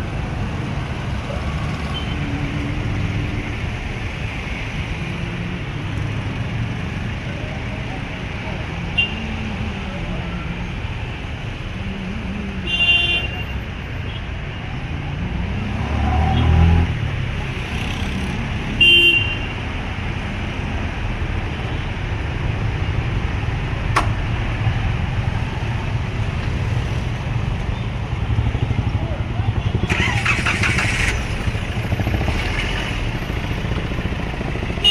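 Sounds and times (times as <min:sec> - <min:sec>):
street traffic: 0:00.0 - 0:34.9
car horn toots: 0:29.9 - 0:31.0.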